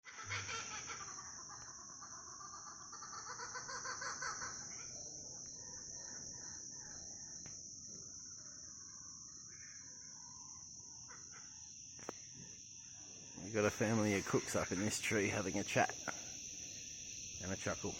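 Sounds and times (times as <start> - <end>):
cicadas droning: 0.0 - 17.9
kookaburras laughing: 0.1 - 5.3, 13.6 - 16.4.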